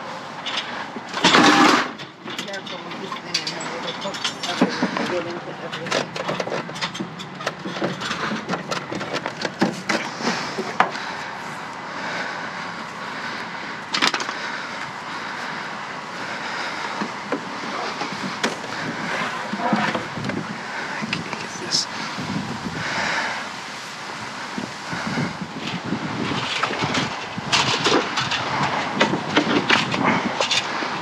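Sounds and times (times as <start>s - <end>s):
objects knocking and clattering: 0.4s - 11.0s.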